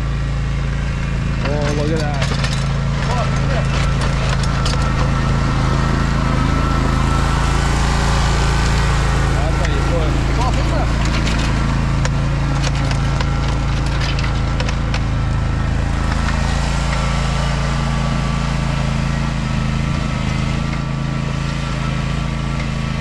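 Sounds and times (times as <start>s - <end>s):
mower engine running: 0.0s - 23.0s.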